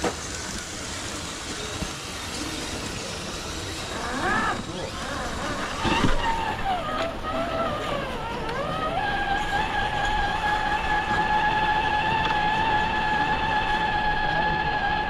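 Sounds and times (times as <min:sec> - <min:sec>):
electric motor and gears whining: 0:00.0 - 0:15.0.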